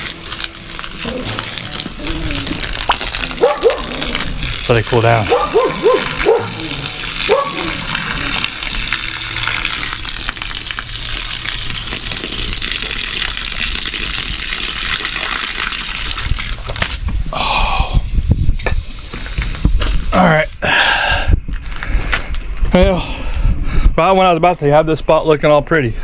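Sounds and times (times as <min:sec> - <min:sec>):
water gushing: 0:00.0 - 0:20.5.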